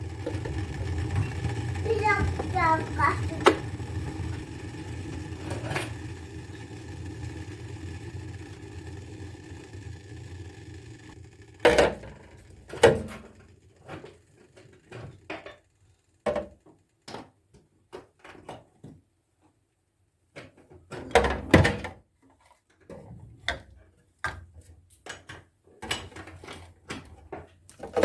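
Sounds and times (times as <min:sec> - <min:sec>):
steady mechanical hum: 0:00.0 - 0:16.2.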